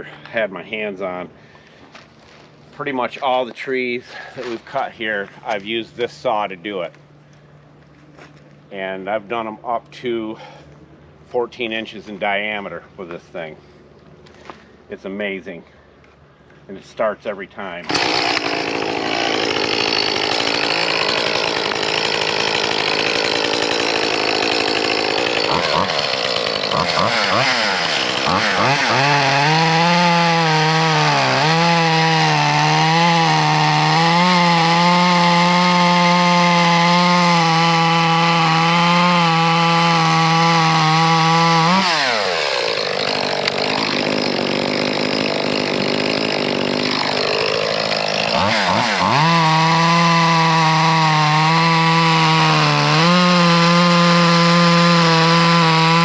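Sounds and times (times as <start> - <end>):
chainsaw revving: 17.8 - 56.0.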